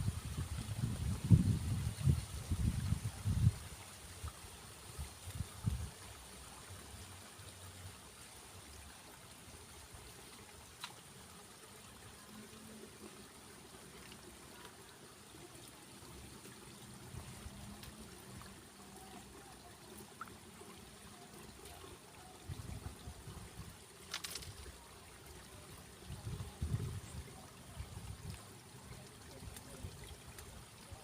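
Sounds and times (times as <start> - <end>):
faint water trickle: 0.0 - 31.0
small tick: 10.8 - 11.0.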